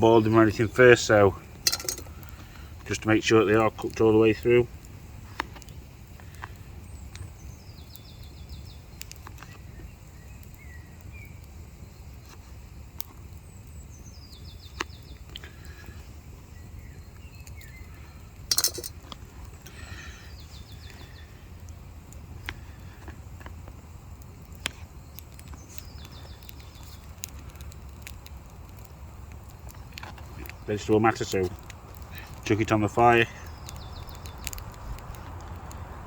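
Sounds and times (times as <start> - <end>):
small birds trilling: 0.0 - 23.0, 24.2 - 35.8
low wind rumble: 13.8 - 36.0
low bird chirps: 33.3 - 34.7.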